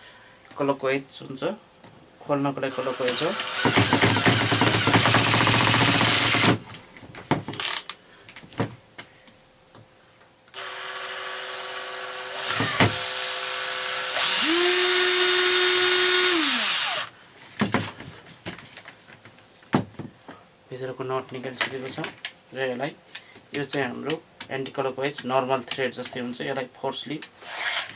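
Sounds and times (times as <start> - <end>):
electric drill motor running: 2.7 - 6.6, 10.5 - 17.1, 27.4 - 27.9.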